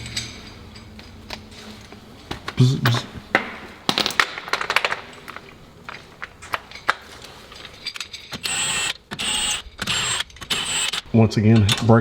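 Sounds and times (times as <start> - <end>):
impact wrench whining: 8.2 - 11.2.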